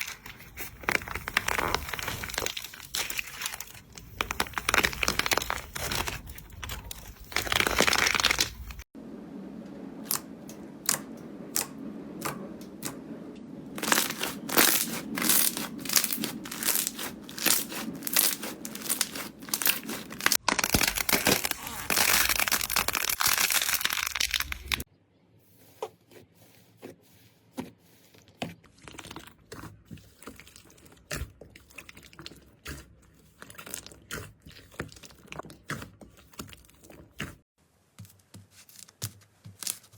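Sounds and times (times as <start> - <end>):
slime crackling and popping: 0.8 - 8.8, 13.8 - 24.8.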